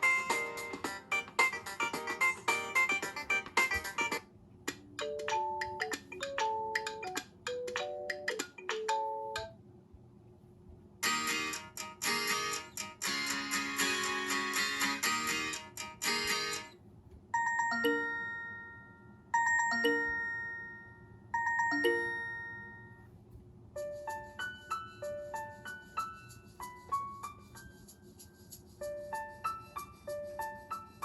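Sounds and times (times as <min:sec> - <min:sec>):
musical phone ringtone: 0:00.0 - 0:04.2, 0:05.0 - 0:09.5, 0:17.4 - 0:23.1
chime ringtone: 0:17.4 - 0:23.1.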